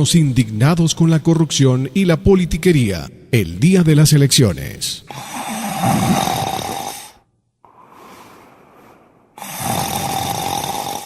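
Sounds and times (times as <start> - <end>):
person snoring: 5.1 - 11.0
quiet breath: 6.8 - 10.1.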